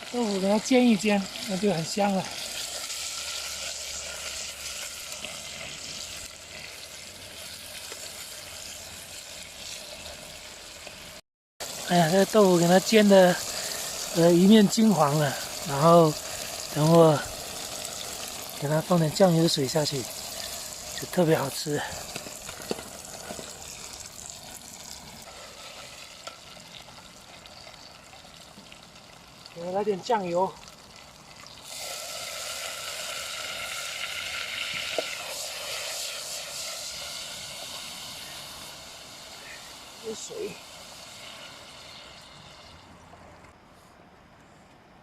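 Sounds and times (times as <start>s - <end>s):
tofu sizzling in hot oil: 0.0s - 43.0s
small crackles: 20.0s - 31.9s.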